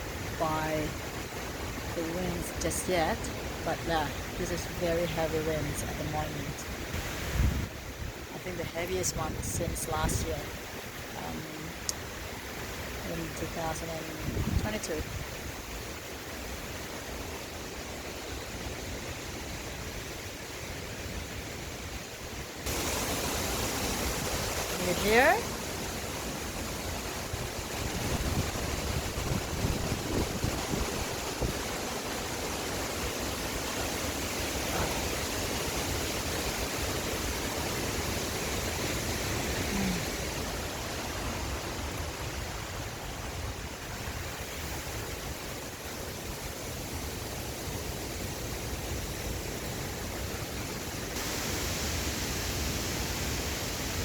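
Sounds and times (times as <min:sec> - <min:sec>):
heavy wind through trees: 0:00.0 - 0:54.0
wind buffeting microphone: 0:01.9 - 0:11.8, 0:13.4 - 0:15.6, 0:26.5 - 0:31.9.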